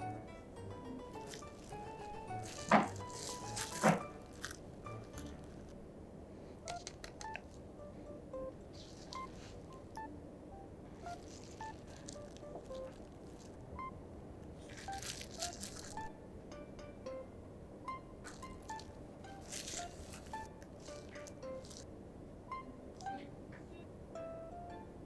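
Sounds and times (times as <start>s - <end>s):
crinkly squeezes and rustles: 1.2s - 5.8s, 8.7s - 9.9s, 11.0s - 13.6s, 14.5s - 16.1s, 18.2s - 21.9s.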